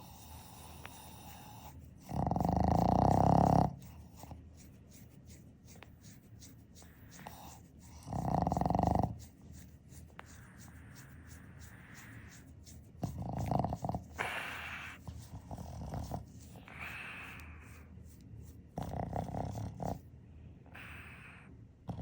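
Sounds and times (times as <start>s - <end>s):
dog snoring: 0.0s - 4.3s, 7.2s - 9.3s, 13.0s - 17.8s, 18.8s - 20.0s, 20.7s - 22.0s.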